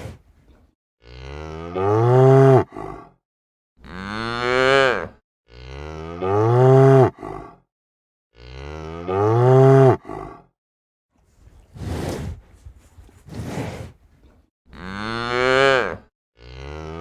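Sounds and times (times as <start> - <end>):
cow mooing: 1.0 - 2.8, 8.4 - 10.2, 14.7 - 17.0.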